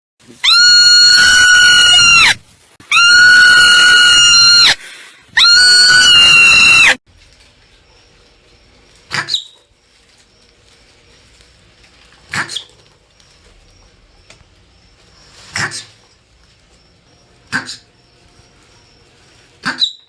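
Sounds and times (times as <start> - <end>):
marmot screaming: 0.4 - 7.0.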